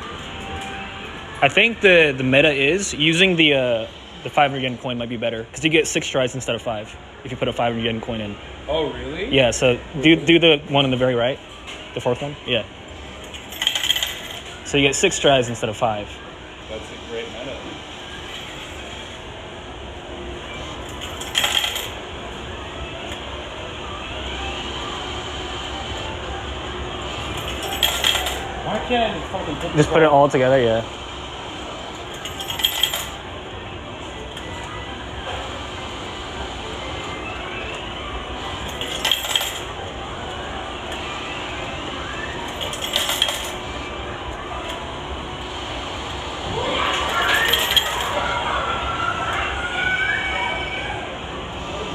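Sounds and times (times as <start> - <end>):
steady background noise: 0.0 - 51.9
coins clinking: 13.0 - 15.6, 20.7 - 22.1, 27.1 - 28.6, 31.9 - 33.3, 38.6 - 39.9, 42.4 - 43.7, 47.0 - 48.2.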